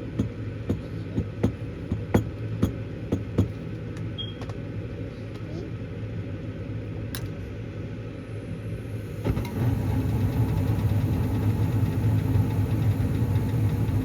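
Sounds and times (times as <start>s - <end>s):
furnace burner rumble: 0.0s - 14.0s
inducer motor humming: 6.4s - 14.0s.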